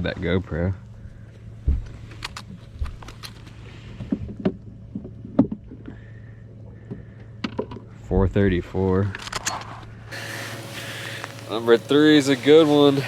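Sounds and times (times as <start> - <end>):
boat low hum: 10.1 - 13.0.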